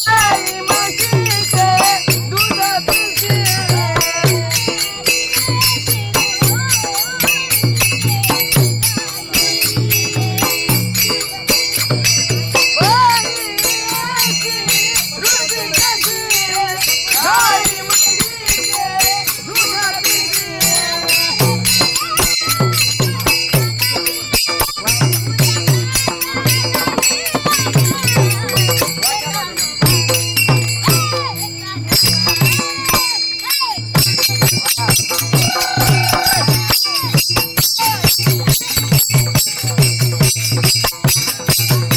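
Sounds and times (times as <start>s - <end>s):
woman singing: 0.0s - 11.5s, 12.8s - 29.9s, 34.6s - 39.0s
drum beat: 0.0s - 33.1s, 33.8s - 41.9s
hand cymbals jingling: 0.0s - 41.9s.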